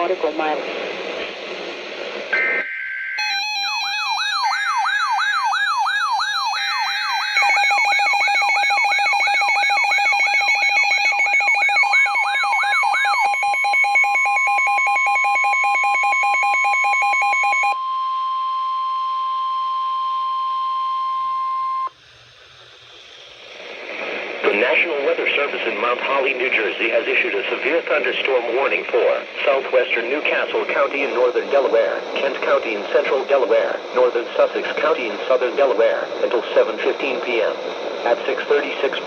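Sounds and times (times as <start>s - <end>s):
electronic siren wail: 2.4s - 17.8s
steady alarm tone: 2.4s - 21.9s
fast alternating beeps: 3.2s - 17.7s
data tone bursts: 6.4s - 17.8s.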